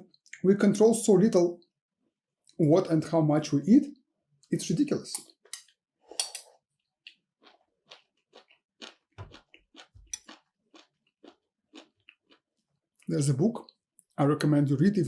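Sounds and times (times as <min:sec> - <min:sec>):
person chewing crunchy food: 0:06.4 - 0:12.9.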